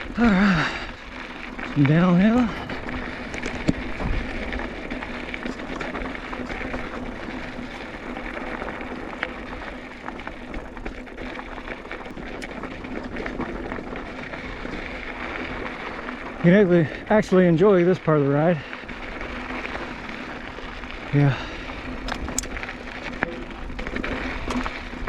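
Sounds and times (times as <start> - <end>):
bike tyres on gravel: 0.0 - 25.0
bike clicks and knocks: 2.6 - 16.2, 21.2 - 25.0.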